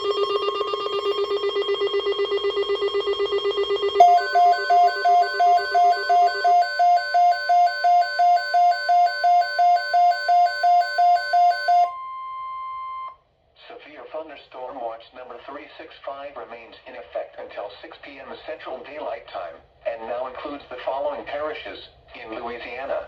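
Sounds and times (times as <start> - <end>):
ringing electronic trill: 0.0 - 13.1
pulsing two-note beep: 0.0 - 13.2.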